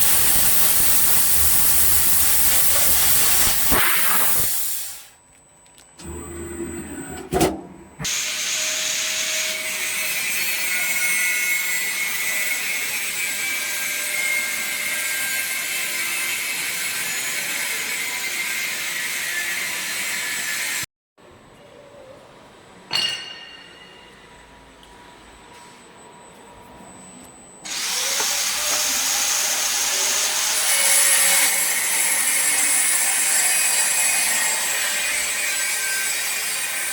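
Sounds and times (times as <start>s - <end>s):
laser cutter assist gas hiss: 0.0s - 5.2s, 8.1s - 10.0s.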